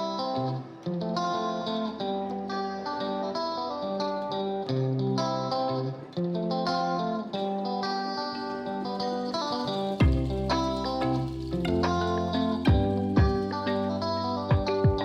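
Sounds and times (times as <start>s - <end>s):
plucked guitar melody: 0.0s - 15.0s.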